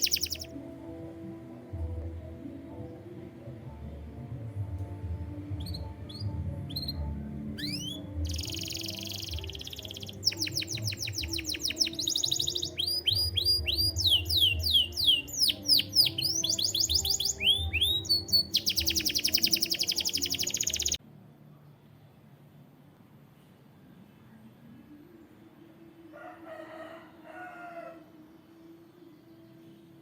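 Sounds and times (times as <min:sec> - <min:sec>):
canary singing: 0:00.0 - 0:00.6, 0:05.5 - 0:21.0.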